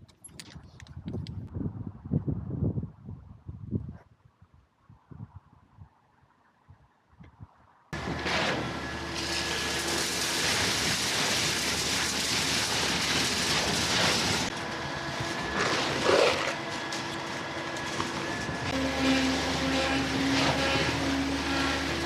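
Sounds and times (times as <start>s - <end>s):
concrete truck machinery running: 8.0s - 22.0s.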